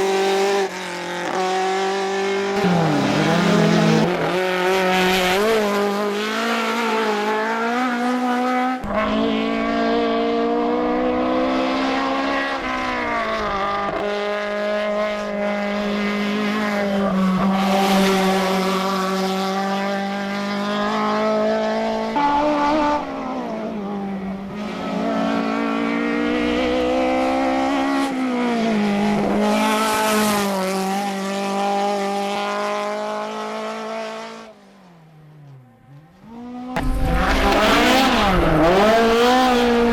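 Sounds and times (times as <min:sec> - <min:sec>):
racing car engine revving: 0:00.0 - 0:34.6, 0:36.2 - 0:39.9.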